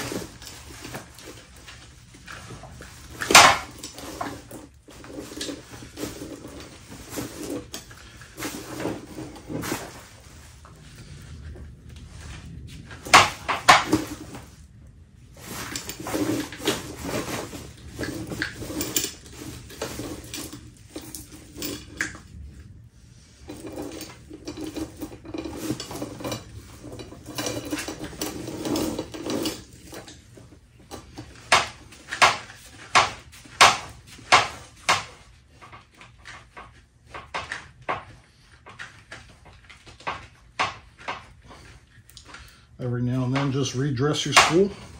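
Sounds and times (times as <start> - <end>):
chainsaw chain clinking: 3.0 - 9.8, 23.5 - 30.2.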